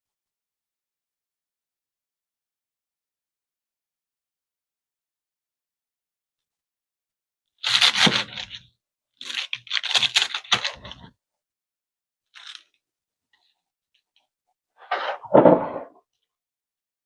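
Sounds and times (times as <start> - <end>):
knife chopping lettuce: 7.6 - 8.6, 9.2 - 11.1.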